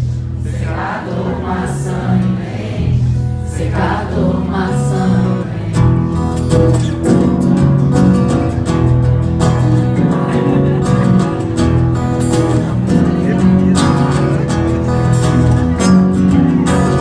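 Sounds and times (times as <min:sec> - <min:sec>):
guitar strummed: 0:00.0 - 0:17.0.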